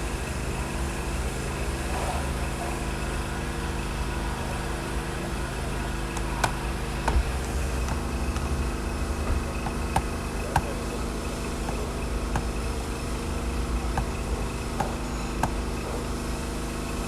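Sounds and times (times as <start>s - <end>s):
machine humming: 5.1s - 17.0s
light clicks and knocks: 6.2s - 13.0s.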